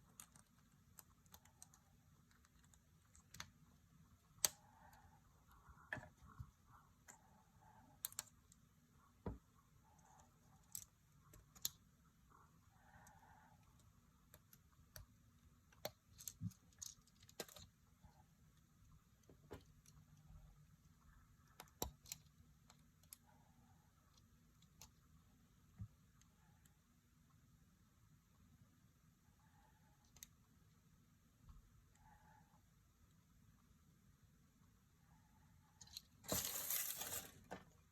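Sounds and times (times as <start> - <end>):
small objects clicking and tapping: 14.2 - 17.8.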